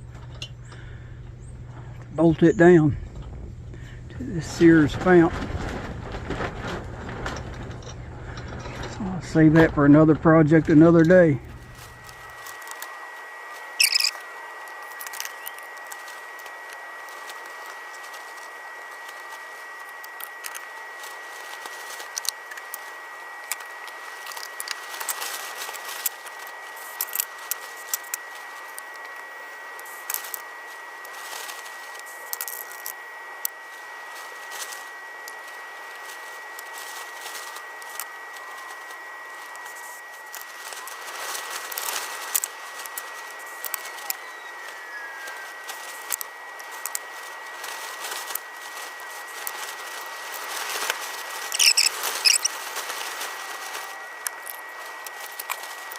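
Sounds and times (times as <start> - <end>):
thin high whine: 0.0 - 55.9
small metal parts clinking: 13.8 - 14.2, 51.5 - 52.5.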